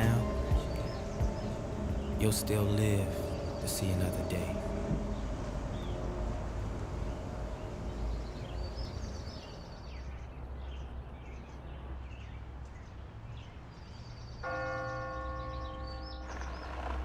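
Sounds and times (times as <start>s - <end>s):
low outdoor rumble: 0.0s - 10.9s
birds chirping: 0.0s - 17.0s.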